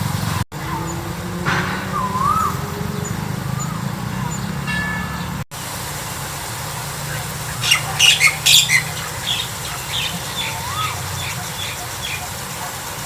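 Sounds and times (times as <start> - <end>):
birds squawking harshly: 0.6 - 5.4, 7.0 - 13.0
short high bird chirps: 0.8 - 5.3.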